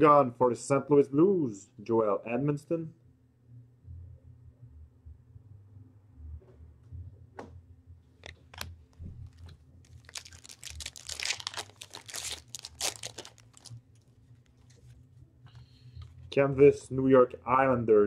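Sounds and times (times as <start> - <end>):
foil wrapper tearing and crinkling: 9.3 - 13.8.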